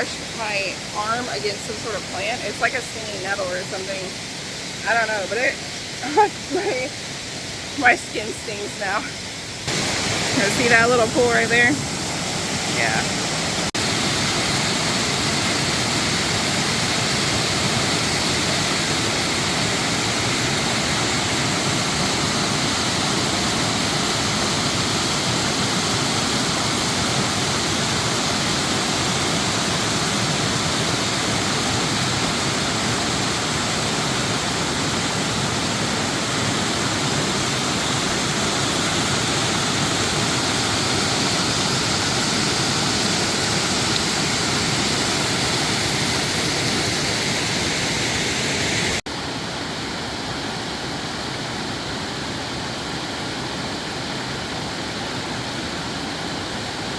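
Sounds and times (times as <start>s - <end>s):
waterfall rushing over rock: 0.0s - 56.9s.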